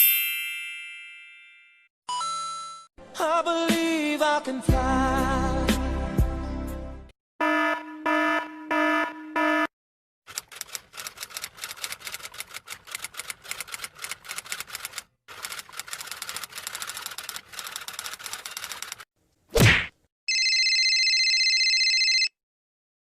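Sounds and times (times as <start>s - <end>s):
electronic alarm beeping: 7.4s - 9.7s
typewriter keys clattering: 10.3s - 19.0s.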